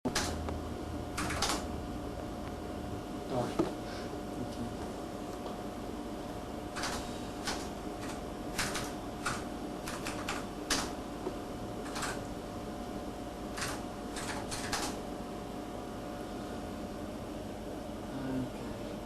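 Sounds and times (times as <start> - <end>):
computer keyboard keystrokes: 0.1 - 0.4, 1.2 - 1.6, 6.8 - 11.0, 11.8 - 12.3, 13.6 - 15.0
steady hum: 0.1 - 19.0.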